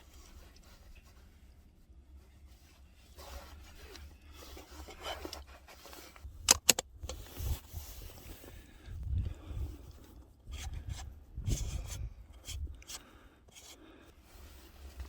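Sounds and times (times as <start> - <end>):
gloved hands rubbing and scraping: 0.0 - 6.4, 7.0 - 8.8, 9.6 - 15.0.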